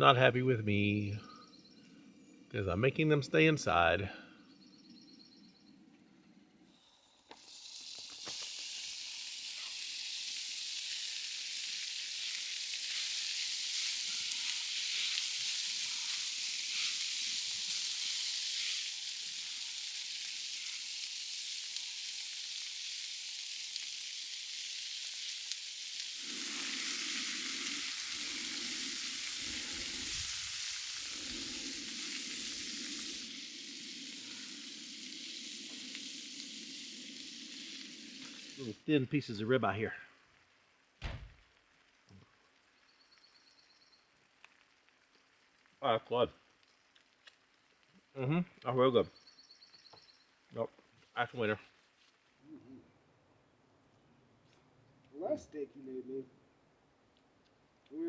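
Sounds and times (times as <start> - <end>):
meat sizzling in a pan: 7.3 - 38.8.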